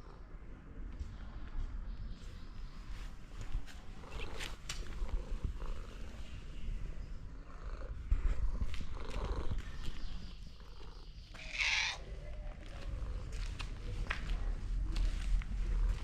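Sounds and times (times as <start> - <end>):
cat purring: 3.7 - 13.8
cat meowing: 11.4 - 12.1.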